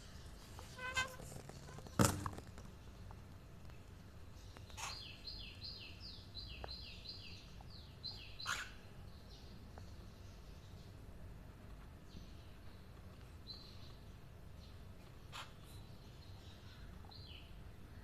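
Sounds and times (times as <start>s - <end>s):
bird chirping: 4.3s - 11.0s.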